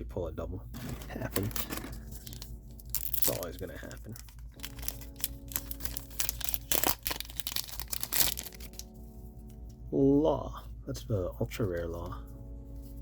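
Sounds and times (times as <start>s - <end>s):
faint background music: 0.0s - 13.0s
cards being handled: 0.8s - 8.9s
foil wrapper crinkling: 0.8s - 9.0s.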